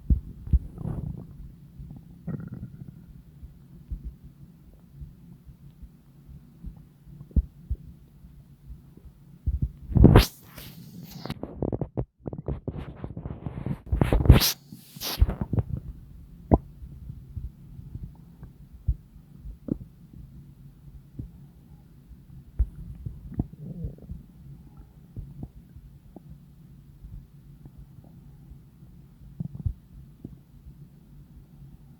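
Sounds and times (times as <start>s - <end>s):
low steady hum: 0.0s - 31.9s
stomach rumbling and gurgling: 0.0s - 31.9s.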